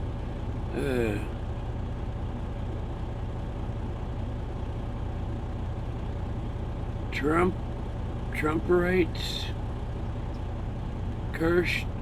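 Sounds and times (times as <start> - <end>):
truck engine idling: 0.0 - 12.0.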